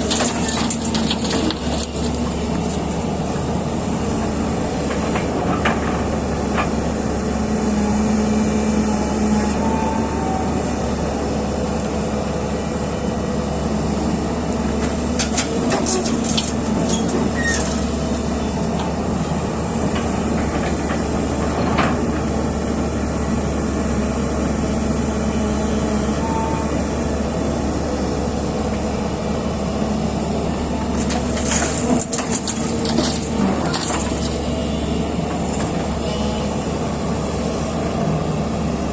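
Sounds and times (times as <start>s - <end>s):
diesel excavator engine running: 0.0s - 38.9s.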